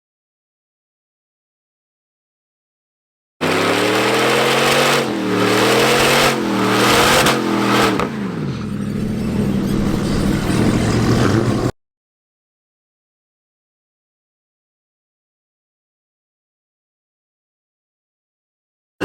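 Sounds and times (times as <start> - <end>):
car engine accelerating: 3.4 - 11.8.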